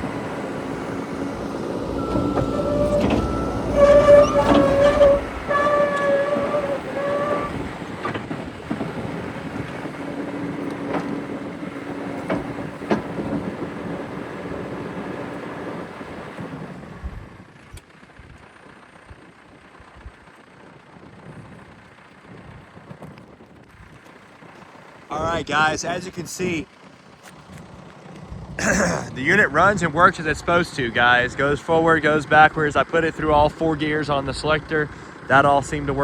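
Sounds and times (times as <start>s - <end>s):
reverse warning alarm beeping: 0.0s - 7.7s
diesel engine running: 0.0s - 23.0s, 23.8s - 36.0s.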